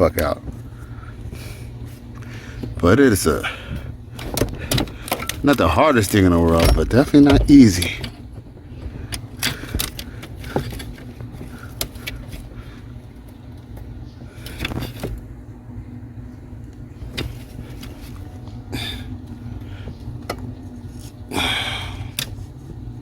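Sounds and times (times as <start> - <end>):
steady low hum: 0.0 - 23.0
clicks and knocks under dashboard: 3.7 - 15.3, 17.0 - 18.4.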